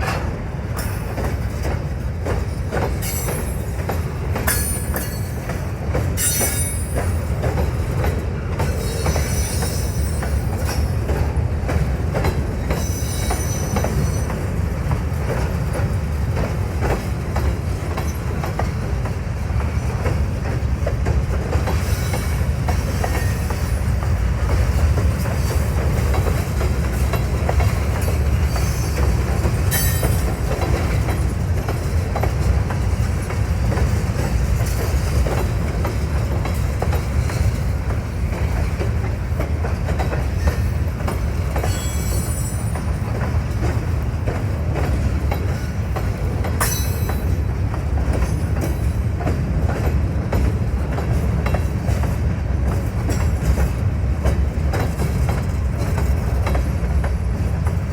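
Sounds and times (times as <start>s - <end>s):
freight train rumbling past: 0.0s - 57.9s
wheels clacking over rail joints: 0.0s - 57.9s
high wheel squeals: 8.8s - 10.6s, 12.8s - 14.3s, 41.6s - 43.0s.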